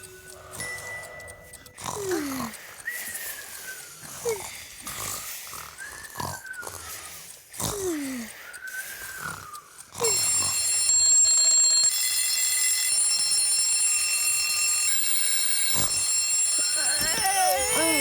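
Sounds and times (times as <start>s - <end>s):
alarm clocks ringing: 0.0s - 6.2s, 6.8s - 18.0s.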